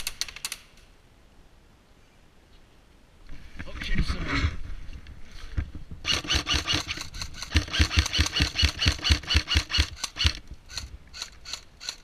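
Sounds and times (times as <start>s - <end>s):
airsoft gun shots: 6.0s - 10.4s.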